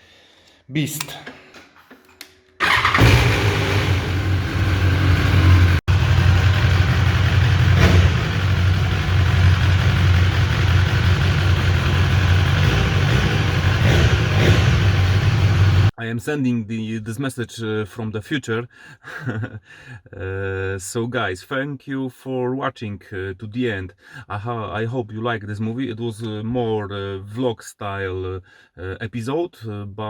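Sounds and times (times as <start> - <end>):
car engine starting and running: 2.6 - 15.9.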